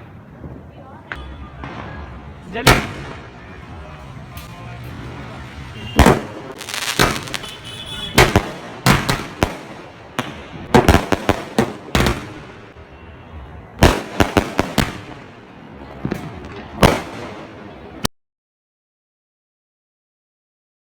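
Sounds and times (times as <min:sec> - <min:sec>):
firework bangs with crackling: 0:00.4 - 0:04.3, 0:05.2 - 0:12.8, 0:13.8 - 0:18.1.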